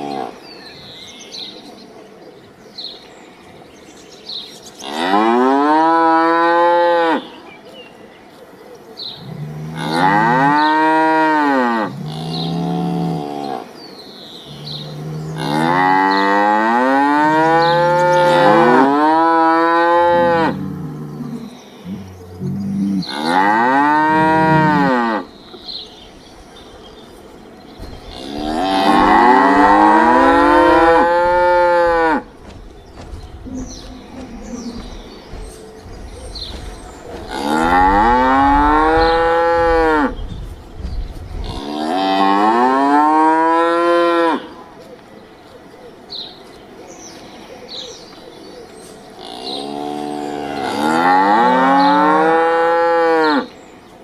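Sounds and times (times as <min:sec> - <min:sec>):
cattle mooing: 0:14.5 - 0:25.3, 0:27.9 - 0:32.3, 0:36.2 - 0:40.1.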